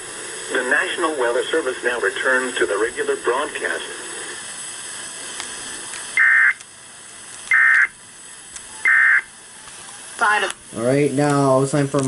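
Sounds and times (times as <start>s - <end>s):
radio hiss: 0.0s - 12.0s
buzzy digital data bursts: 6.1s - 9.6s.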